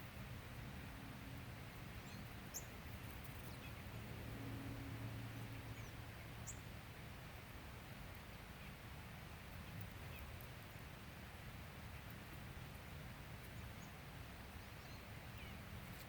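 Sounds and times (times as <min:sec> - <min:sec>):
faint background hiss: 0:00.0 - 0:16.0
small bird chirps: 0:01.9 - 0:04.0, 0:05.3 - 0:06.7, 0:14.6 - 0:16.0.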